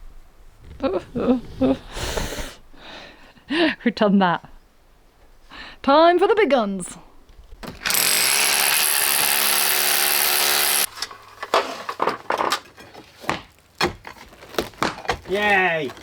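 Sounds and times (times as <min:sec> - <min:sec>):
power tool running: 0:07.7 - 0:10.9.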